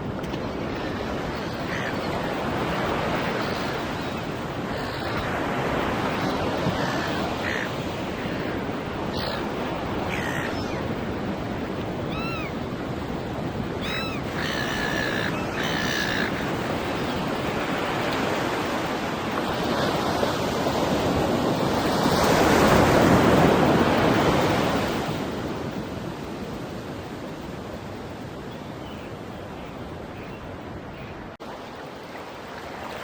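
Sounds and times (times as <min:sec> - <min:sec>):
ocean surf on a beach: 0:00.0 - 0:33.0
gulls calling: 0:00.2 - 0:17.7.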